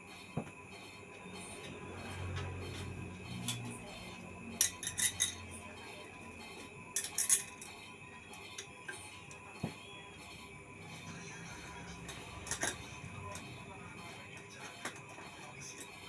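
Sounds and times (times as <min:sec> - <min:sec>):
metal parts clinking: 0:04.6 - 0:05.4.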